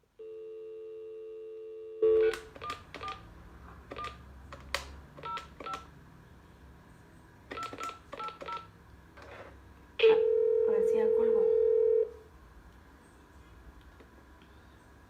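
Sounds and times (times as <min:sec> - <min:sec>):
dial tone: 0:00.2 - 0:02.4, 0:10.0 - 0:12.1
two-tone keypad beeps: 0:07.5 - 0:08.7.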